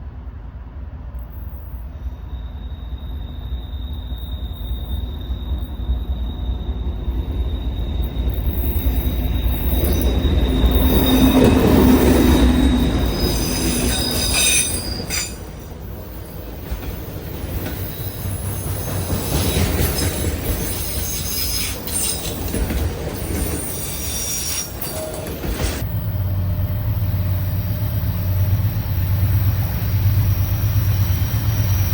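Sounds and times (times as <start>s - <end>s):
train rumbling on rails: 0.0s - 31.9s
wheel squeals: 1.8s - 25.9s.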